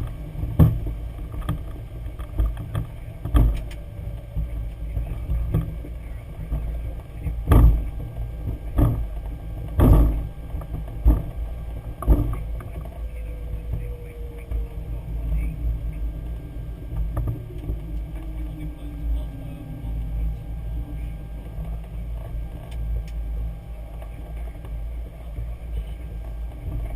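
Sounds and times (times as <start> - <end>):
cockpit low rumble: 0.0 - 26.9
sharp thumps: 6.5 - 12.7.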